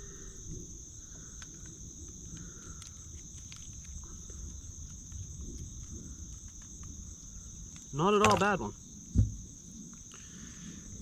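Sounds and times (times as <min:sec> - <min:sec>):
high-pitched insect chorus: 0:00.0 - 0:11.0
small clicks: 0:01.3 - 0:07.0.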